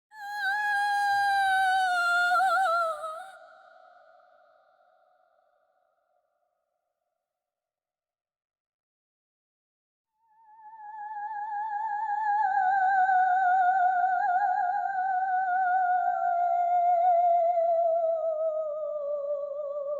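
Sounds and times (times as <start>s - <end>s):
eerie wordless ghost singing: 0.1s - 4.9s, 10.3s - 19.9s.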